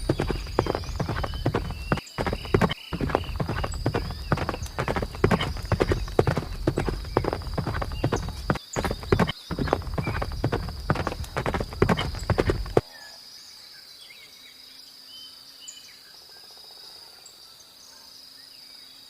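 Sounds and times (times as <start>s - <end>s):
horse hooves clip-clopping: 0.0s - 12.8s.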